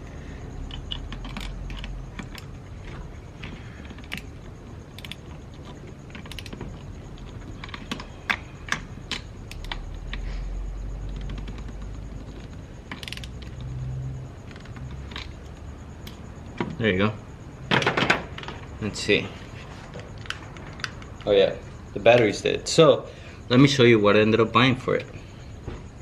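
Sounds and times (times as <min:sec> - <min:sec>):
hand tool clicking on metal: 0:05.0 - 0:05.2, 0:06.2 - 0:06.6, 0:12.9 - 0:13.4.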